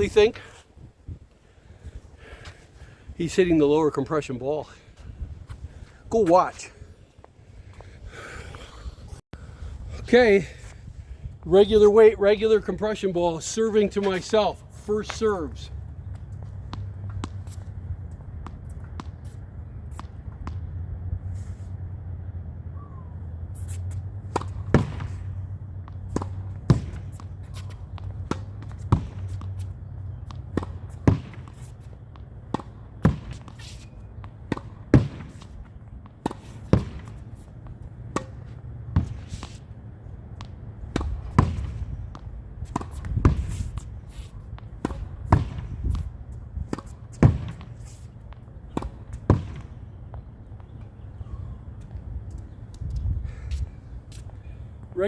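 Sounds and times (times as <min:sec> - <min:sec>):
racket hitting tennis ball: 0:16.4 - 0:21.9, 0:23.5 - 0:49.8.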